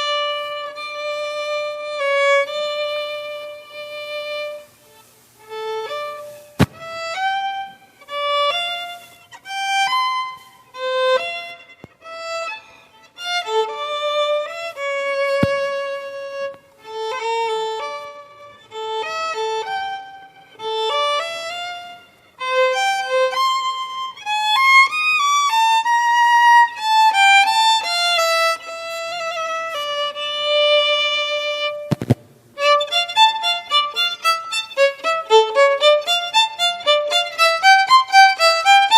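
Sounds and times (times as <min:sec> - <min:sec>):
violin melody: 0:00.0 - 0:38.9
brief knocks: 0:06.6 - 0:07.0, 0:15.4 - 0:15.7, 0:31.9 - 0:32.3.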